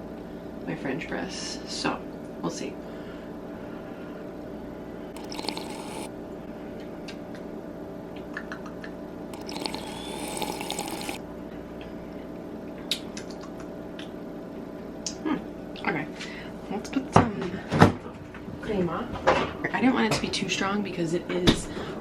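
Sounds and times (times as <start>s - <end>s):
coffee pouring from french press: 5.2s - 6.1s, 9.4s - 11.2s.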